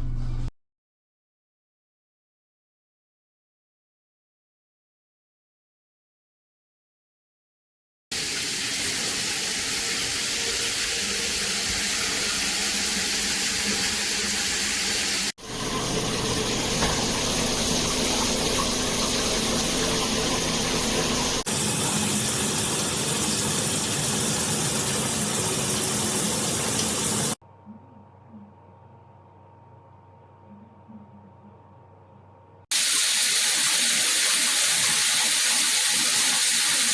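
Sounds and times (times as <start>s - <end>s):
shower water spraying: 8.1s - 27.4s, 32.7s - 36.9s.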